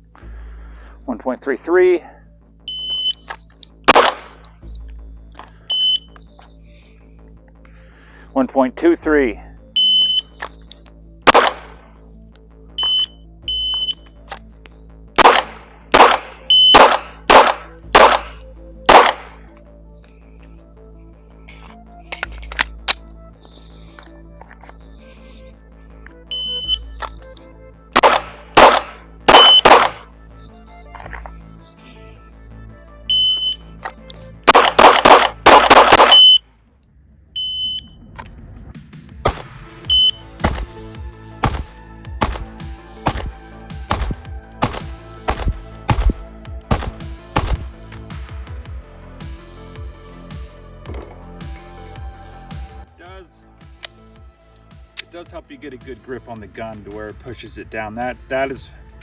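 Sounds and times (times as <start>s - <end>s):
shot timer beeps: 2.7s - 3.2s, 5.7s - 6.2s, 9.8s - 10.3s, 12.8s - 14.0s, 16.5s - 16.9s, 26.3s - 26.8s, 29.3s - 29.9s, 33.1s - 33.6s, 35.9s - 36.4s, 37.4s - 37.9s, 39.9s - 40.2s
pistol shots: 3.9s - 4.4s, 11.3s - 11.8s, 15.2s - 19.4s, 28.0s - 30.1s, 34.5s - 36.4s, 39.3s - 47.7s.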